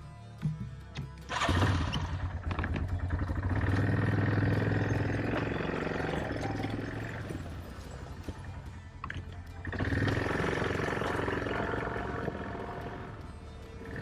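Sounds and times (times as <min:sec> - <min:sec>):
chainsaw engine running: 0:01.3 - 0:14.0.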